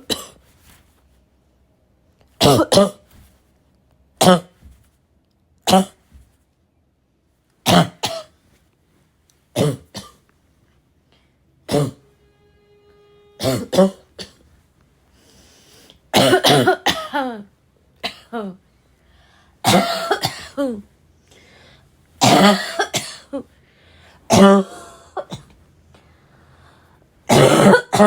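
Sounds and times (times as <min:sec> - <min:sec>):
woman coughing hoarsely: 0:00.0 - 0:00.4, 0:02.4 - 0:03.1, 0:04.2 - 0:04.6, 0:05.7 - 0:06.0, 0:07.7 - 0:08.3, 0:09.6 - 0:10.2, 0:11.7 - 0:12.0, 0:13.4 - 0:14.4, 0:16.1 - 0:18.6, 0:19.6 - 0:20.9, 0:22.2 - 0:23.5, 0:24.3 - 0:25.6, 0:27.3 - 0:28.0.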